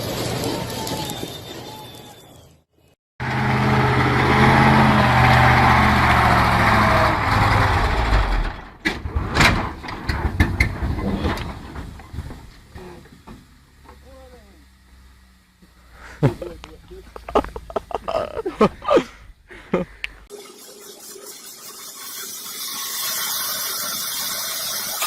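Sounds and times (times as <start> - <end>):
heavy vehicle engine running: 3.2 - 8.8, 11.7 - 19.5
sharp knocks and bangs: 7.3 - 13.5.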